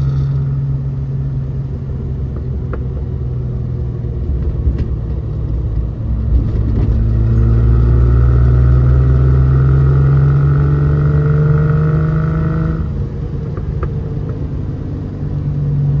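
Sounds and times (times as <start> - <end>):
car engine accelerating: 0.0 - 16.0.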